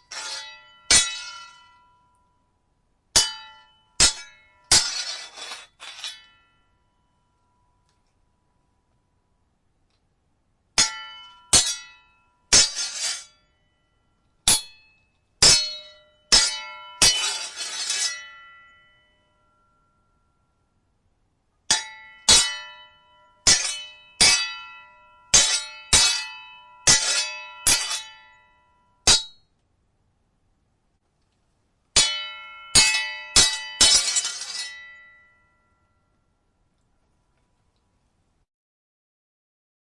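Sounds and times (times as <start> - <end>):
blade scraping along blade: 0.0 - 1.6, 4.1 - 6.4, 12.6 - 13.3, 17.1 - 18.2, 33.8 - 34.8
sword blades clashing: 0.0 - 1.8, 3.2 - 6.5, 10.8 - 13.4, 14.5 - 18.7, 21.7 - 28.3, 29.0 - 29.4, 32.0 - 35.3.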